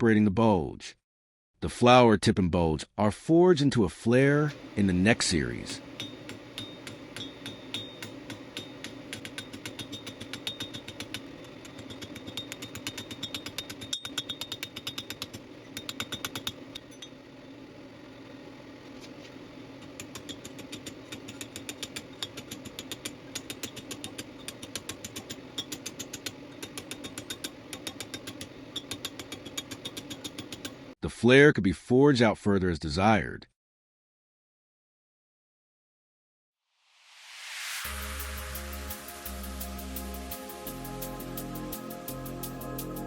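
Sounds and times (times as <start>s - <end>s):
hammer blows on hot steel: 4.5s - 17.3s
machine hum: 4.5s - 31.0s, 37.8s - 43.0s.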